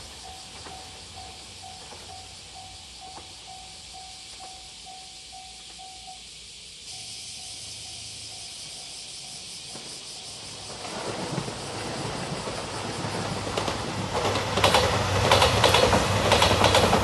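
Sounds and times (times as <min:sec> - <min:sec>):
level-crossing alarm ringing: 0:00.0 - 0:10.5
diesel train approaching: 0:00.0 - 0:17.0.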